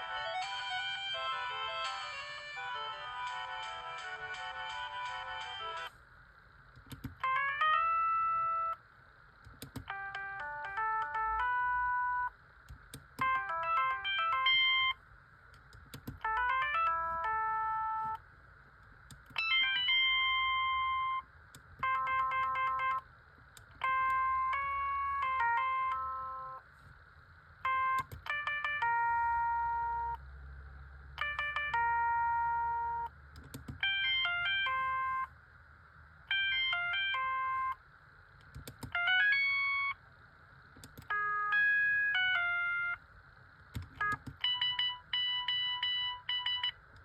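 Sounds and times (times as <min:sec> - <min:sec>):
mobile phone ringtone: 0:00.0 - 0:05.9, 0:13.2 - 0:15.0, 0:16.2 - 0:18.2, 0:19.4 - 0:21.2, 0:21.8 - 0:23.0, 0:23.8 - 0:26.6, 0:27.6 - 0:30.2, 0:31.2 - 0:33.1, 0:33.8 - 0:35.3, 0:36.3 - 0:37.8, 0:39.0 - 0:40.0, 0:41.1 - 0:43.0, 0:44.0 - 0:46.8.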